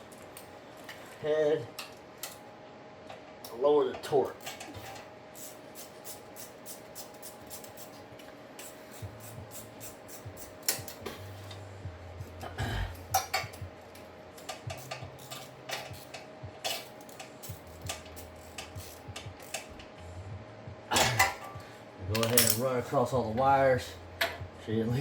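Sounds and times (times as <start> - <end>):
hand ratchet clicking: 8.6 - 11.0, 14.4 - 19.8
metal tools clinking: 13.1 - 13.6, 14.4 - 18.8, 21.0 - 22.8.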